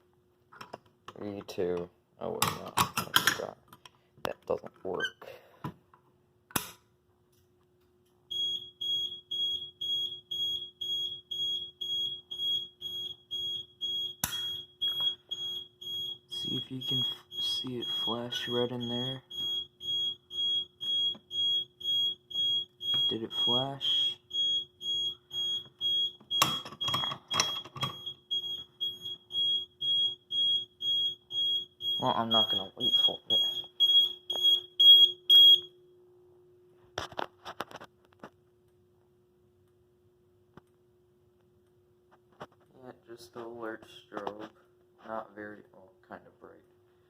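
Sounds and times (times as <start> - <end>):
fire alarm beeping: 8.3 - 35.8.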